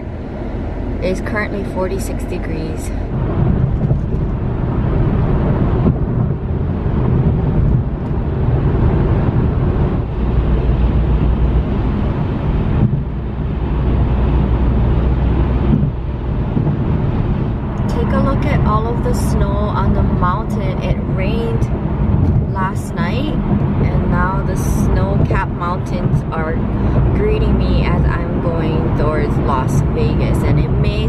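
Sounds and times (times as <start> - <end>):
car engine and tyre rumble: 0.0 - 31.0.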